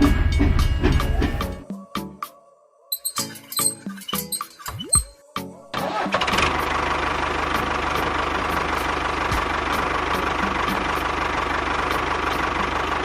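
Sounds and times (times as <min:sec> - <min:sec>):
tractor engine idling: 0:05.8 - 0:13.0.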